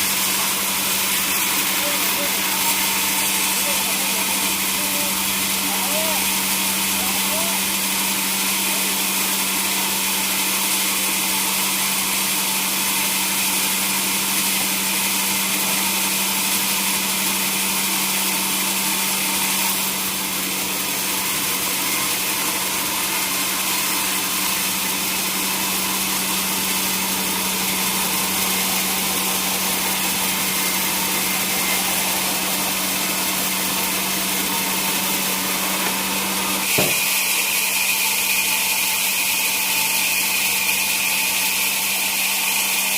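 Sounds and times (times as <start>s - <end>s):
saw cutting noise: 0.0s - 42.9s
motor hum: 19.9s - 37.0s.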